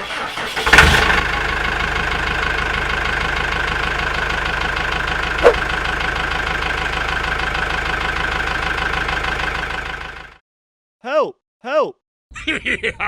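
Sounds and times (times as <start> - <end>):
small tractor engine idling: 0.2 - 10.4
short sharp sound: 5.4 - 5.6.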